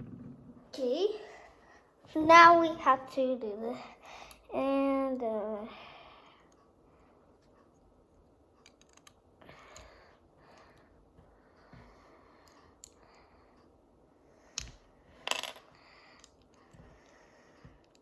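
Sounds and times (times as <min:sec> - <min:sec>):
plastic toy parts clicking: 0:08.6 - 0:09.2.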